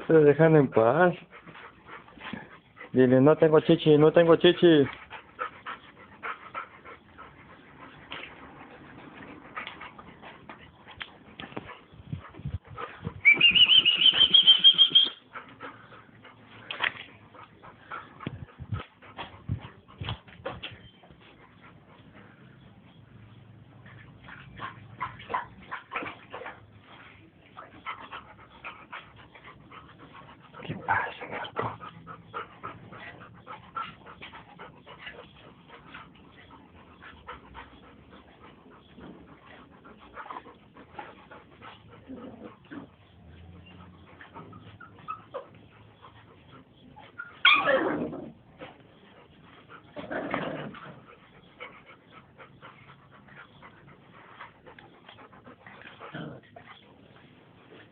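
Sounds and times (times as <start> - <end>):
puppies whimpering and yipping: 13.1 - 15.5, 41.8 - 48.8
puppies crying loudly: 47.0 - 48.1.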